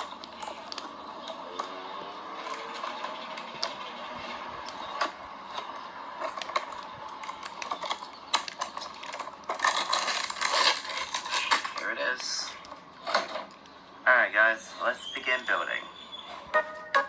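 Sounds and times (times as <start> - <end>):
packaging rustling: 4.6 - 13.8.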